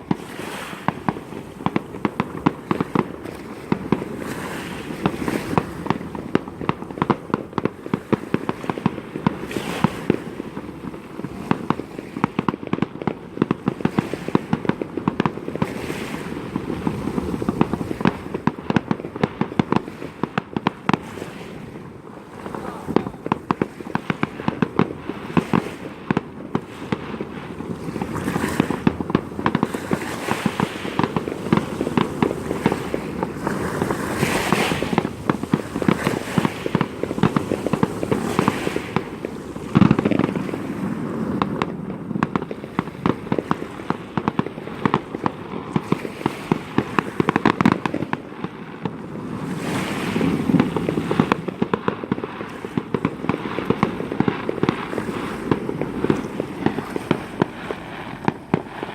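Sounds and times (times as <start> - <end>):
fireworks bangs and crackles: 0.0 - 58.9
heavy firework boom: 48.9 - 58.9.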